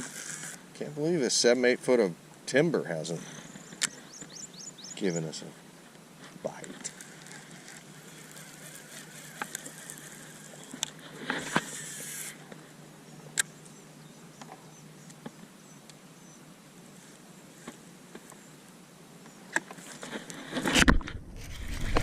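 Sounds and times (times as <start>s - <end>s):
electric trolling motor hum: 0.0s - 0.8s, 6.4s - 18.8s
fishing tackle clicks: 6.6s - 12.4s.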